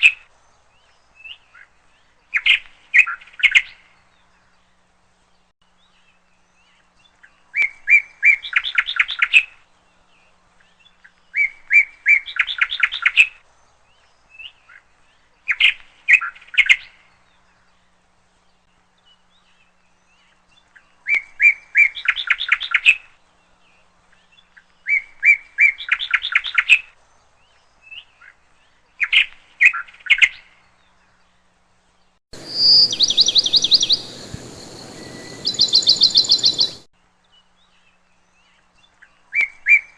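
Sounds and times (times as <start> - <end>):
higher-pitched birdsong: 0.0 - 39.9
songbird singing trill: 0.0 - 39.9
steady hiss: 31.6 - 36.9.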